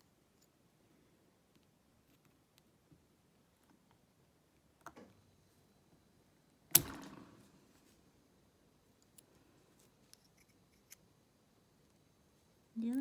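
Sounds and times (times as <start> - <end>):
hand tool snapping on metal clip: 6.8 - 7.2.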